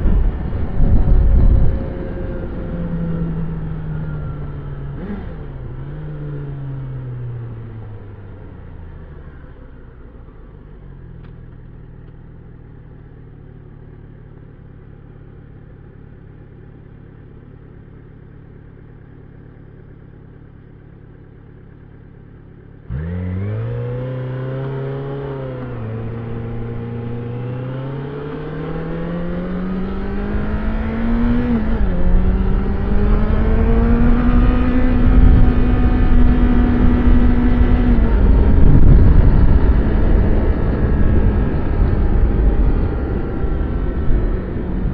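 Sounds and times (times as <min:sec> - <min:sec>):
motorcycle revving and pulling away: 0:00.0 - 0:44.9
motorcycle engine idling: 0:07.4 - 0:22.9.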